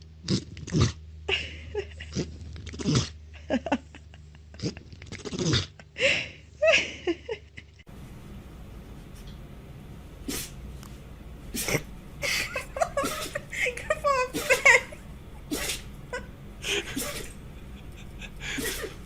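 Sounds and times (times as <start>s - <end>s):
pet sneezing and snorting: 10.2s - 10.6s, 11.4s - 12.0s, 12.8s - 13.5s, 14.3s - 16.0s, 16.7s - 19.0s.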